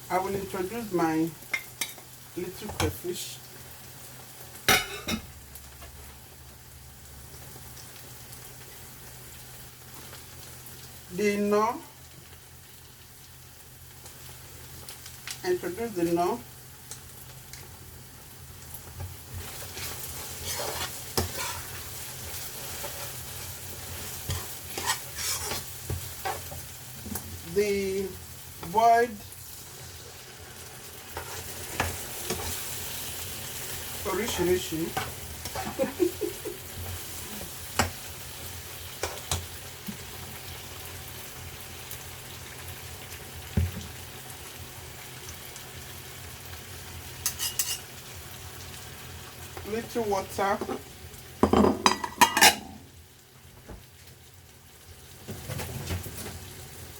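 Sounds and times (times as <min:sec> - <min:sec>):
okra sizzling in a frying pan: 0:00.0 - 0:56.9
spoon scraping and knocking pan: 0:19.4 - 0:27.2, 0:31.1 - 0:32.6, 0:47.2 - 0:47.8, 0:50.6 - 0:52.8.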